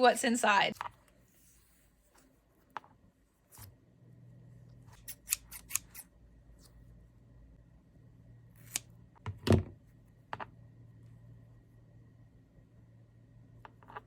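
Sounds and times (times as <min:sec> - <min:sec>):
scissors snipping: 0:04.9 - 0:06.0, 0:08.6 - 0:08.9.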